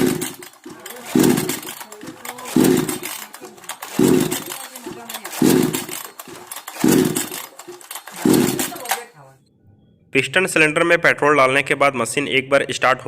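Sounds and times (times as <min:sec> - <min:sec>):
engine cranking briefly: 0:00.0 - 0:09.1
chainsaw recoil starter pulls: 0:00.0 - 0:09.2.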